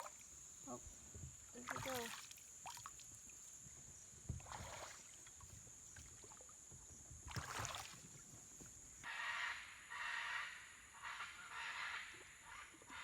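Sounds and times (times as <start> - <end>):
insects droning: 0.0 - 13.0
paddle swishing through water: 1.2 - 3.2, 4.3 - 6.5, 7.3 - 8.8.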